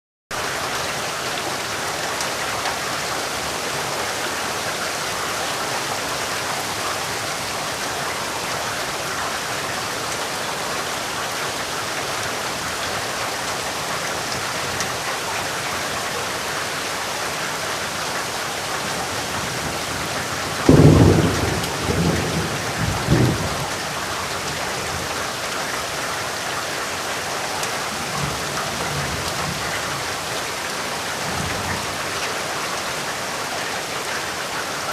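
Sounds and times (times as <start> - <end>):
steady rain falling: 0.3 - 34.9
thunderclap rumbling: 19.5 - 23.8.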